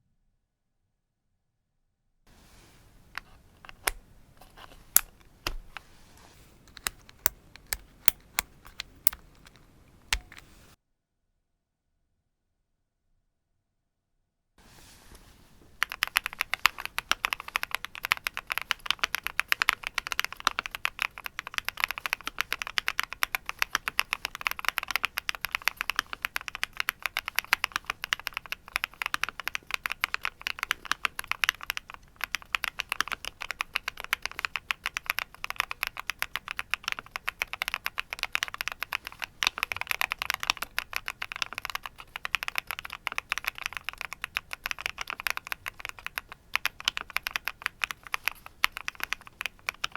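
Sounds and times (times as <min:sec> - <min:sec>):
mechanical keyboard typing: 0:06.7 - 0:10.5, 0:15.8 - 0:49.9.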